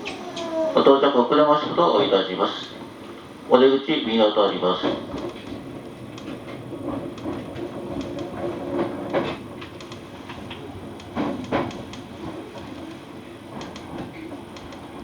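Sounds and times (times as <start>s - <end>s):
train rumble and hum: 0.0s - 15.0s
sharp clicks and knocks from wheels: 4.8s - 15.0s.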